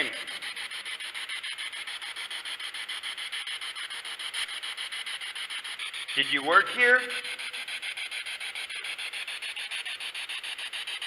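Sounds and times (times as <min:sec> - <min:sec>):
rapid scanning pulses: 0:00.0 - 0:11.0.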